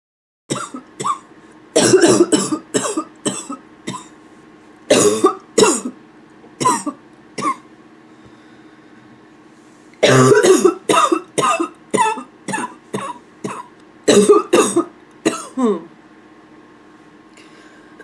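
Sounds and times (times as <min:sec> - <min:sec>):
person coughing hoarsely: 0:00.5 - 0:04.2, 0:04.9 - 0:06.0, 0:06.6 - 0:07.7, 0:10.0 - 0:15.9.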